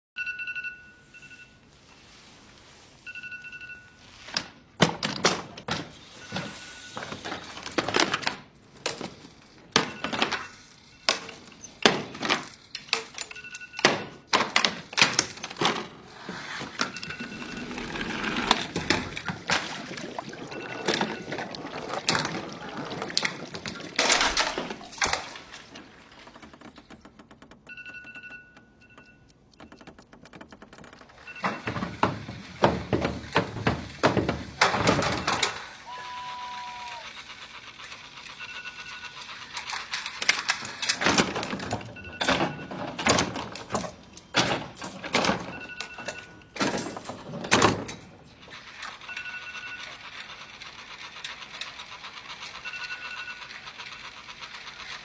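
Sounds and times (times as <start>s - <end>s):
phone alarm beeping: 0.2s - 4.5s, 6.0s - 7.6s, 9.7s - 11.7s, 13.1s - 14.3s, 16.5s - 23.0s, 26.4s - 32.8s, 34.8s - 37.1s, 38.2s - 39.5s, 41.8s - 43.3s, 45.2s - 46.6s, 49.0s - 50.2s, 52.5s - 53.8s.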